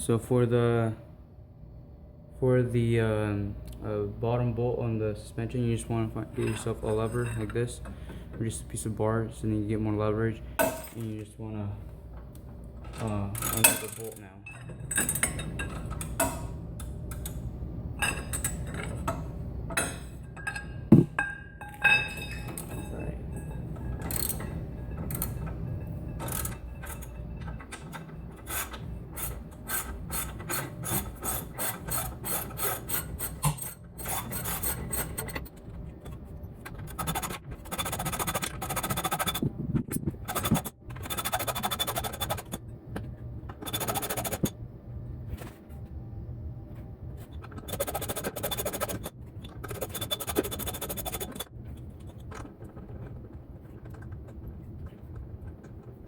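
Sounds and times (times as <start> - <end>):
metal clanks: 10.6 - 11.2, 12.8 - 17.4
metal scraping: 20.9 - 39.5, 47.3 - 52.2.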